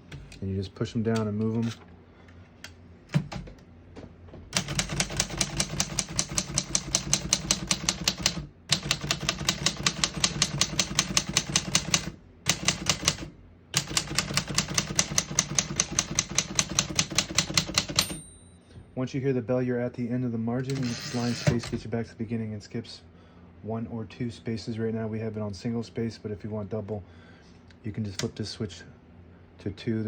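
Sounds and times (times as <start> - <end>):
typewriter typing: 4.6 - 18.2, 20.7 - 21.8.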